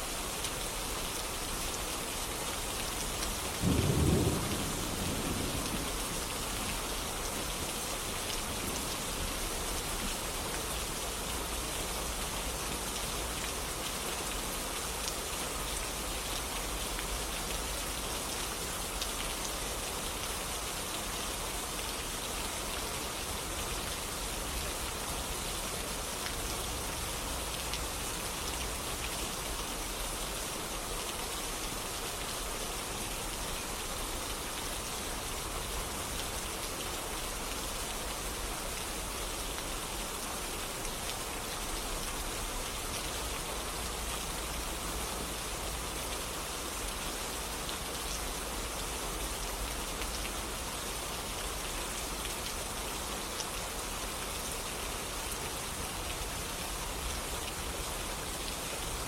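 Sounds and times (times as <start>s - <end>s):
steady rain falling: 0.0s - 59.0s
thunder clap rumbling: 3.6s - 6.0s.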